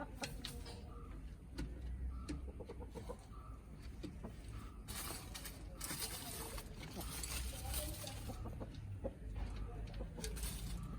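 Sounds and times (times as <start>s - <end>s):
chickens clucking softly: 0.0s - 4.4s.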